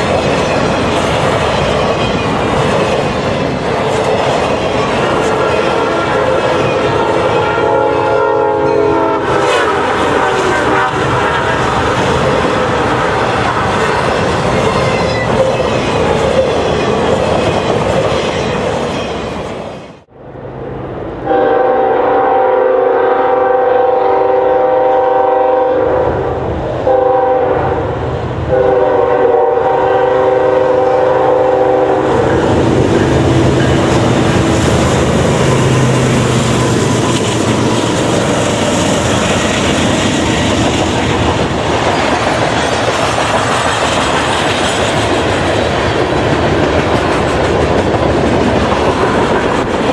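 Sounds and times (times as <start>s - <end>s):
train wheels clattering on rails: 0.0s - 20.1s, 31.6s - 49.9s
diesel locomotive running: 0.0s - 49.9s
locomotive air horn: 5.2s - 11.9s, 21.2s - 27.8s, 28.5s - 38.9s.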